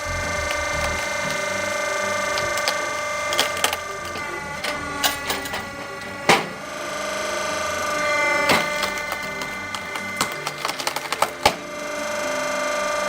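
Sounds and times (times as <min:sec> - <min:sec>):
wood-processing machine whining: 0:00.0 - 0:13.0.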